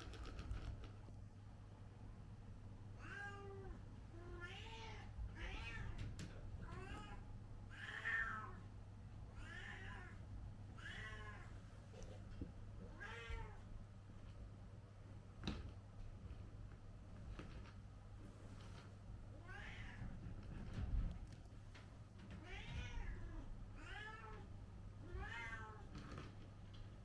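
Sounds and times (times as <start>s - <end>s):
cat meowing: 6.6s - 8.6s, 10.8s - 11.5s, 25.1s - 25.9s.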